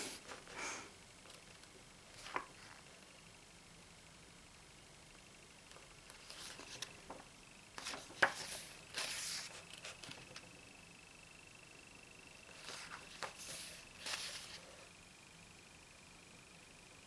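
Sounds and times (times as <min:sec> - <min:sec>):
pages turning: 0:02.1 - 0:02.8, 0:06.1 - 0:07.0, 0:07.8 - 0:10.5, 0:12.5 - 0:14.8.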